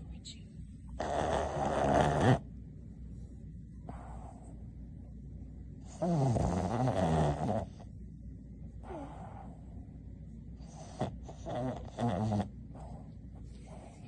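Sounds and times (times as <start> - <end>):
dog snoring and snorting: 0.9 - 2.5, 5.8 - 7.9, 8.8 - 9.7, 10.6 - 14.0.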